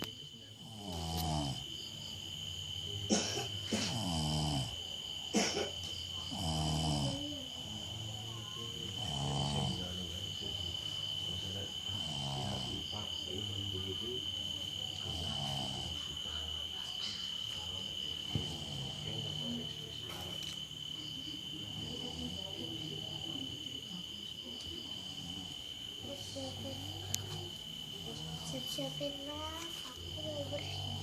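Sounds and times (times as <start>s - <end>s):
person snoring: 0.5s - 1.7s, 3.4s - 4.9s, 6.2s - 8.1s, 8.9s - 10.8s, 11.8s - 13.2s, 14.9s - 16.2s, 18.3s - 19.6s, 24.9s - 25.8s, 30.2s - 31.0s.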